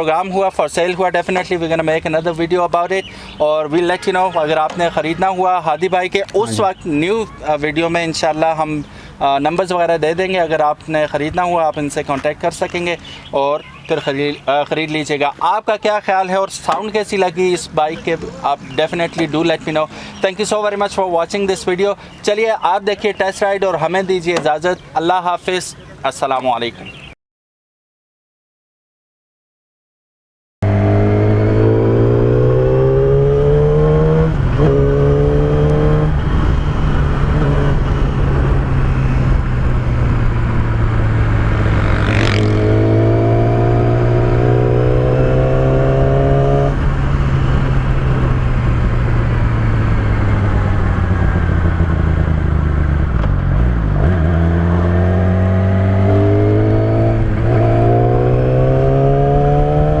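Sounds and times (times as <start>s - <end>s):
motorcycle engine revving through gears: 30.6s - 60.0s.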